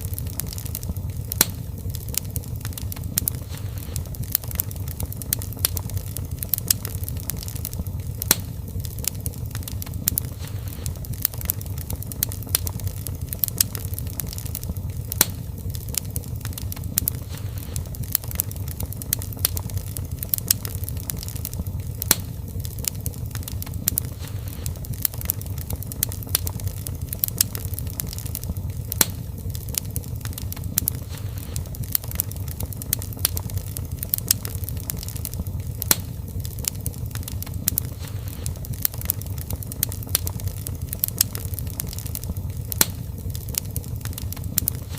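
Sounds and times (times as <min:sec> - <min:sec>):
wood fire crackling and popping: 0:00.0 - 0:44.9.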